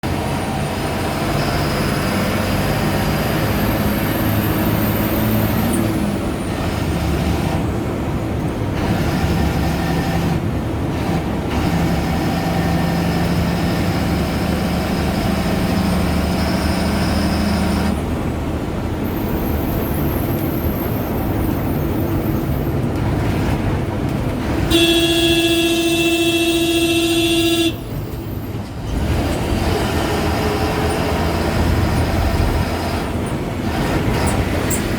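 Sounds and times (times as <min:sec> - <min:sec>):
diesel bus engine running: 0:00.0 - 0:34.9
bus horn: 0:24.5 - 0:28.2.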